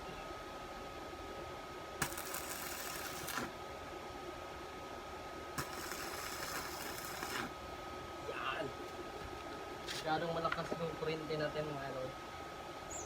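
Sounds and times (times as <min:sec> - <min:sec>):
welding arc crackling: 0:02.0 - 0:03.6, 0:05.6 - 0:07.6.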